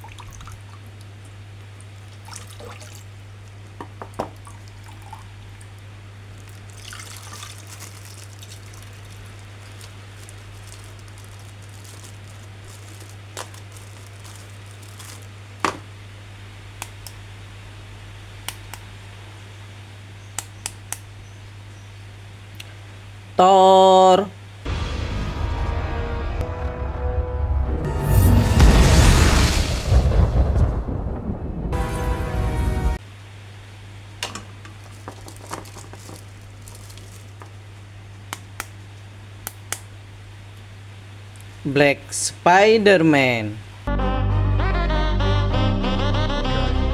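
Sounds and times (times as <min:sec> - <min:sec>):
steady low hum: 0:00.0 - 0:23.4.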